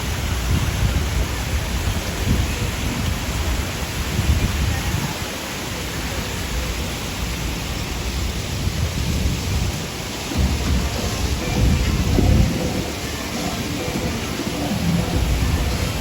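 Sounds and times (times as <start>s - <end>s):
city street noise: 0.0s - 16.0s
low rumble: 10.3s - 16.0s.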